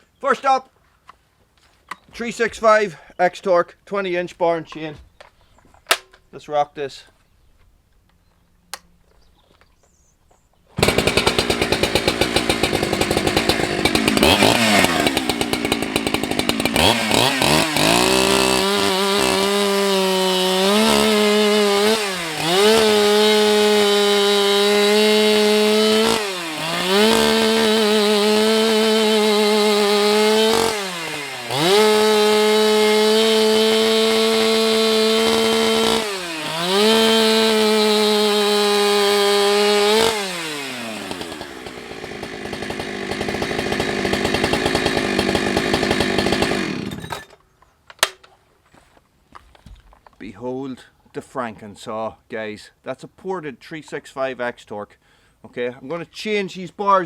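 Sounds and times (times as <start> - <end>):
chainsaw revving: 10.8 - 47.3.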